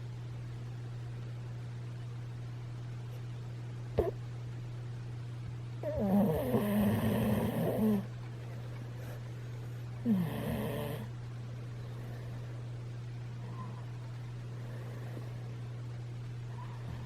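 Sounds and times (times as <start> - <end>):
pet snoring: 5.8 - 8.1, 10.0 - 11.1.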